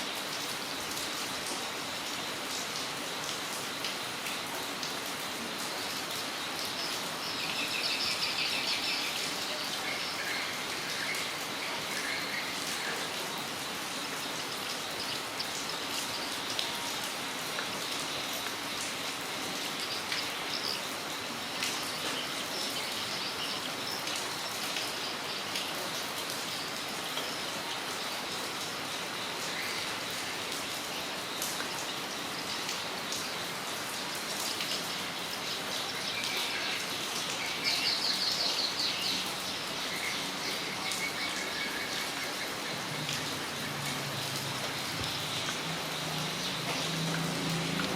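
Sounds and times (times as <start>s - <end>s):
steady rain falling: 0.0s - 47.9s
raindrops tapping: 42.8s - 47.9s.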